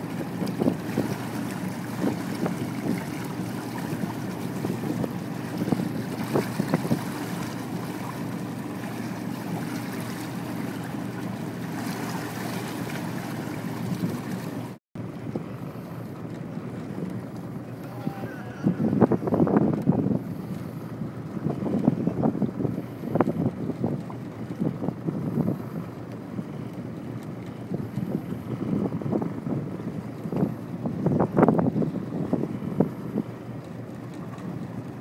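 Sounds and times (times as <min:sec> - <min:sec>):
small splashes: 0:00.0 - 0:14.8
water washing against boat: 0:00.0 - 0:35.0
wind buffeting microphone: 0:00.0 - 0:35.0.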